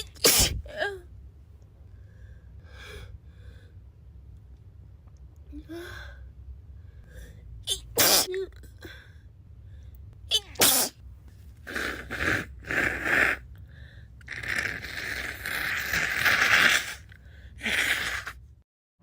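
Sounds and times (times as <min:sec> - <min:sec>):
girl sneezing: 0:00.0 - 0:00.8, 0:07.7 - 0:08.4, 0:10.3 - 0:11.0
breathy hissing rushes: 0:14.3 - 0:18.4.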